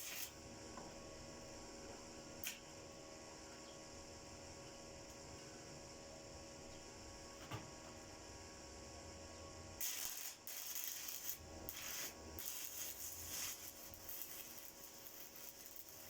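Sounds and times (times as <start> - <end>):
welding arc crackling: 0.0 - 0.4, 9.8 - 16.0.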